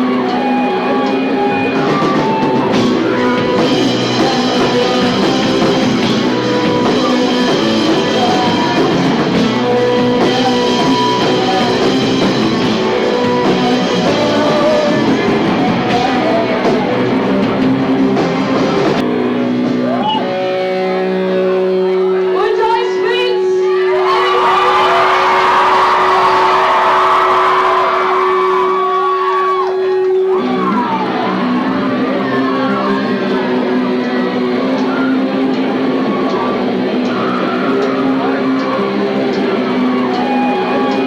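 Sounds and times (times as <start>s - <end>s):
rock music with guitar and drums: 0.0s - 22.7s, 24.0s - 41.0s.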